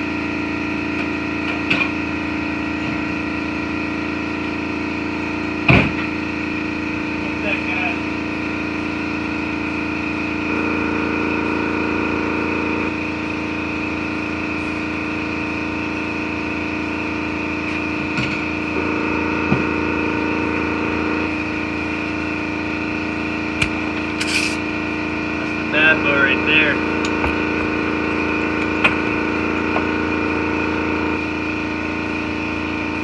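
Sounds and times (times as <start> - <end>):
machine hum with fixed tones: 6.8 - 33.0.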